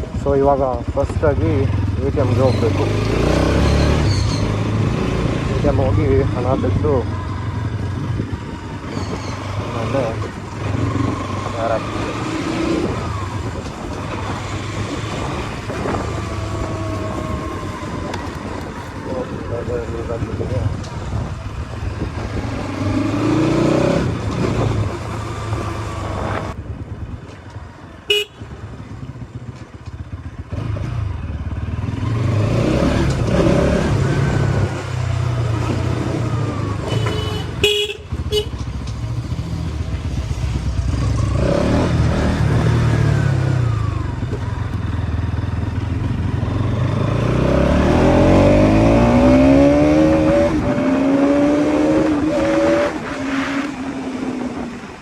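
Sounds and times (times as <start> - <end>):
motorcycle engine accelerating: 0.4 - 27.4, 28.1 - 55.0
horn toots: 28.1 - 28.5, 36.8 - 39.3.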